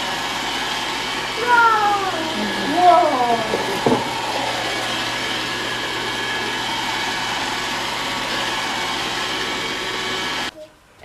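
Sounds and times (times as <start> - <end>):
robot vacuum whirring: 0.0 - 10.5.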